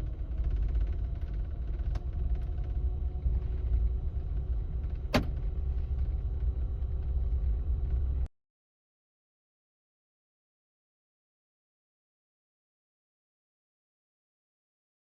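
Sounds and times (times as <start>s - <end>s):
car engine rumbling: 0.0s - 8.3s.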